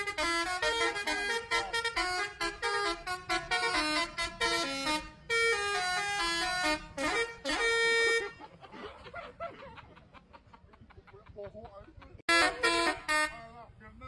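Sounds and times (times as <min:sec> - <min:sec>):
musical air horn tune: 0:00.0 - 0:08.4, 0:12.3 - 0:13.6
faint voices of people: 0:00.2 - 0:03.0.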